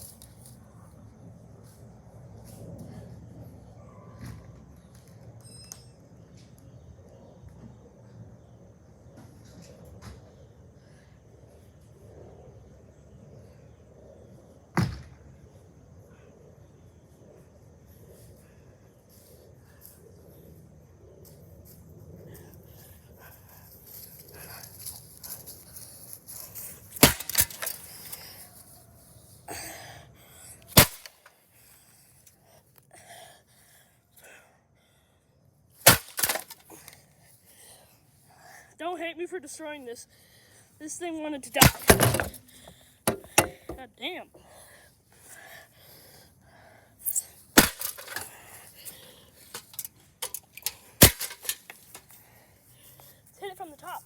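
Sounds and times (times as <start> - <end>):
loose parts rattling: 27.0 - 28.2, 41.6 - 43.9, 47.6 - 48.4, 49.4 - 52.1
sledgehammer hitting metal fan: 43.1 - 43.8.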